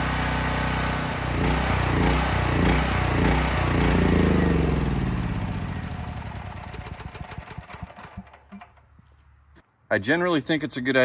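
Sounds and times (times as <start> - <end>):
generator engine winding down: 0.0 - 8.8.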